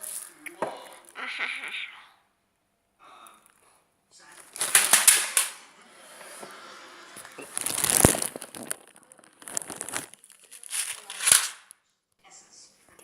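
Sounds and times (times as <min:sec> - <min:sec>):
plastic wrapper crinkling: 0:00.0 - 0:01.2, 0:04.3 - 0:05.6, 0:07.3 - 0:11.8.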